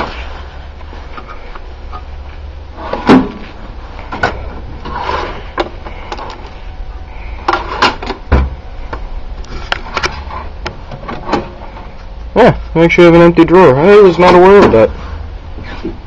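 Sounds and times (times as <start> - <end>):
steady low hum: 0.0 - 16.0
heavy thump: 7.9 - 8.6.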